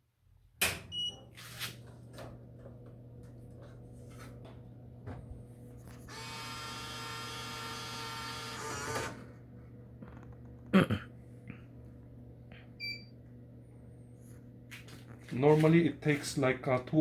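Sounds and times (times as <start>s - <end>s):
vending machine electrical hum: 0.2s - 17.0s
buzzing motor whir: 6.0s - 9.3s.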